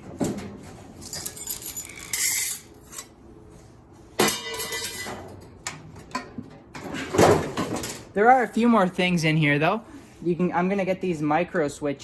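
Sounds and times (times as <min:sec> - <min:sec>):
metal parts clattering: 0:01.0 - 0:03.1, 0:04.2 - 0:05.2.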